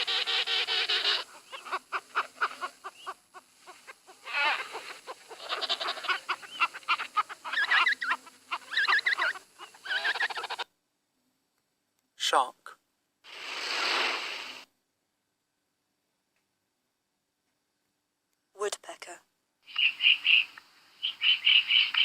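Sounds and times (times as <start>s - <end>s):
penguins calling: 0.0s - 10.7s.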